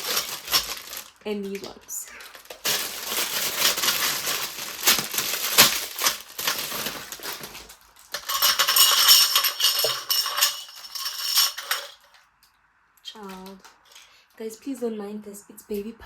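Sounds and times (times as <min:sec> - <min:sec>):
hardware pieces rustling and clicking: 0:00.0 - 0:12.2
metal fittings jingling: 0:08.1 - 0:12.1.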